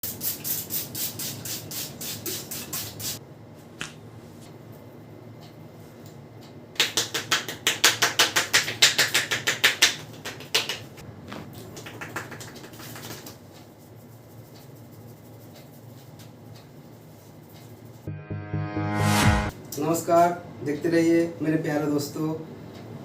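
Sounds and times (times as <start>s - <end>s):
sharp hand slaps: 6.8s - 10.9s.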